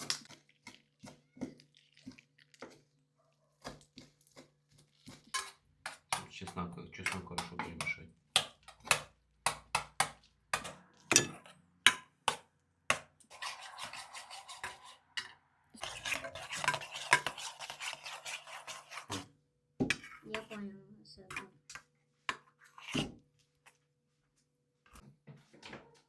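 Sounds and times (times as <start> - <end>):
spoon scraping round bowl: 0.0 - 19.3, 19.9 - 20.6, 21.3 - 23.8
spoon clinking against bowl: 10.6 - 12.4.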